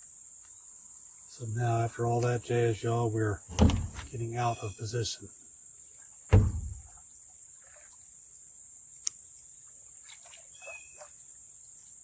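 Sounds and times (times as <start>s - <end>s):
high insect chorus: 0.0s - 12.0s
loud thump: 3.5s - 4.2s, 6.3s - 7.0s.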